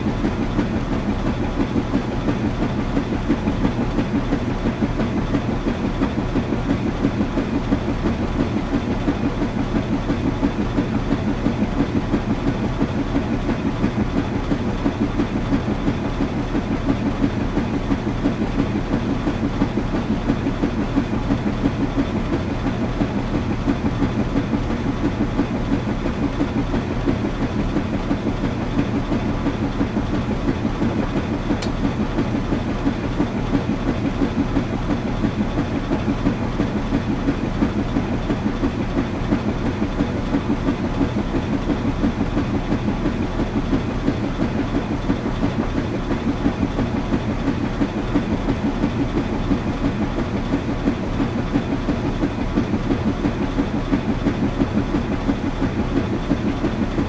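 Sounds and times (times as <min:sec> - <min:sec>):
washing machine running: 0:00.0 - 0:57.0.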